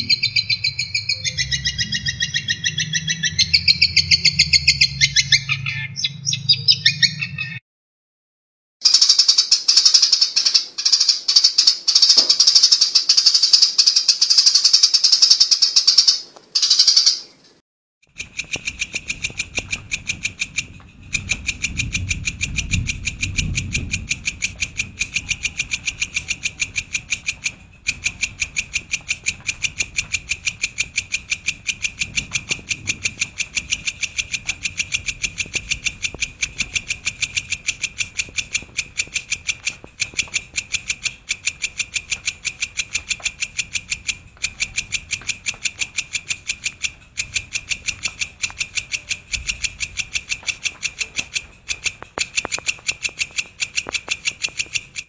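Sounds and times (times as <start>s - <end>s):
sharp repeated bird chirps: 0.0s - 7.6s, 8.8s - 17.3s, 18.1s - 55.0s
songbird warbling: 0.0s - 7.6s, 8.9s - 17.3s.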